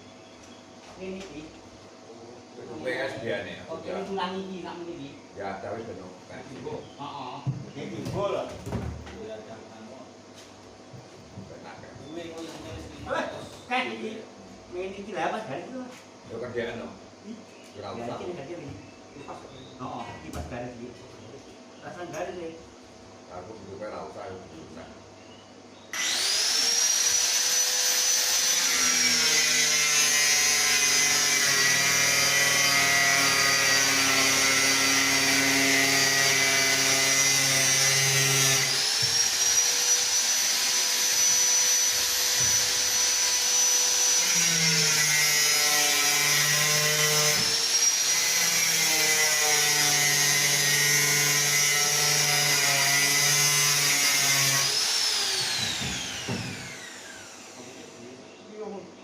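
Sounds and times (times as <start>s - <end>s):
power tool motor whining: 25.9s - 57.9s.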